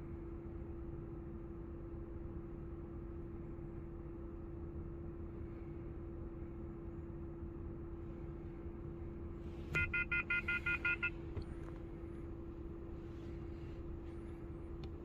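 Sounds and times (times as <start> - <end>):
car engine idling: 9.2 - 15.0
short electronic beeps: 9.8 - 11.2.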